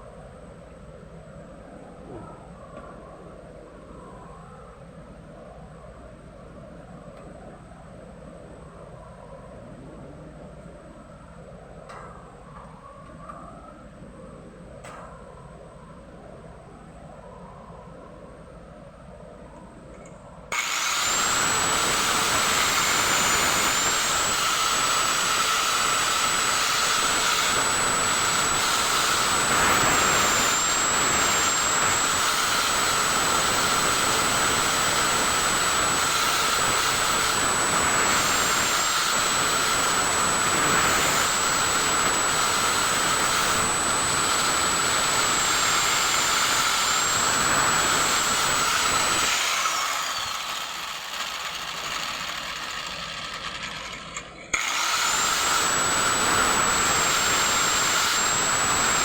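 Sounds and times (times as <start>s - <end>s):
high-speed power tool whining: 20.5s - 59.0s.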